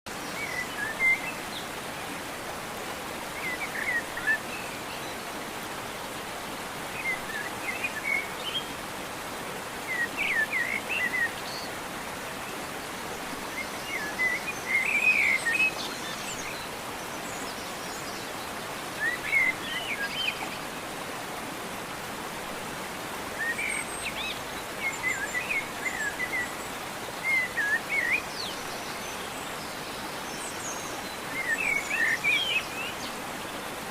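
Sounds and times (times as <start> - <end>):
small birds chirping: 23.1 - 33.9.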